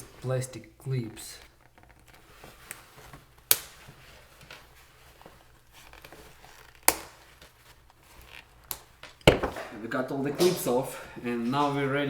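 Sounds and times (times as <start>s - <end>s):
handling rustle: 1.4s - 9.8s.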